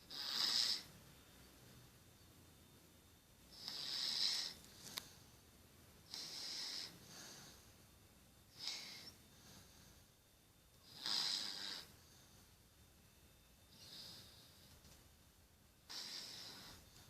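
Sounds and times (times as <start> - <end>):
child snoring: 0.0 - 0.9, 3.5 - 4.9, 6.1 - 7.6, 8.5 - 9.7, 10.8 - 12.1, 13.7 - 14.6, 15.9 - 17.0.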